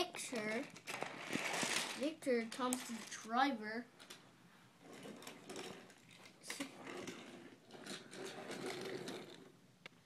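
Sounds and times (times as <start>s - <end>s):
toy train motor whirring: 0.6s - 2.0s.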